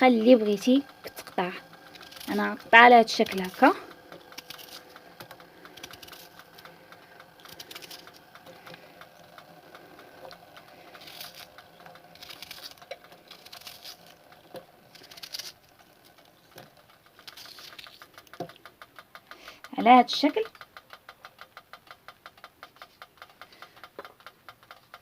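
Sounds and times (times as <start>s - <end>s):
knife cutting an onion: 3.2s - 8.8s.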